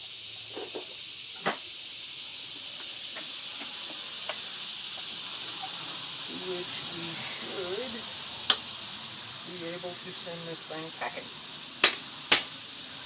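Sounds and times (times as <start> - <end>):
steady high hiss: 0.0 - 13.0
hand tools clicking: 11.8 - 12.5
sharp knock: 11.8 - 12.5.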